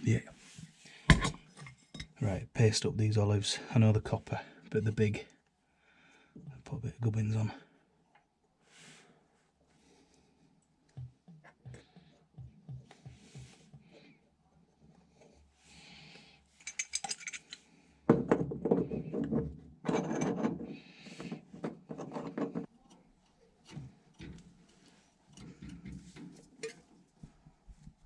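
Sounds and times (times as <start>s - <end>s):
metal tools and fittings clinking: 1.1s - 2.2s, 16.6s - 17.6s.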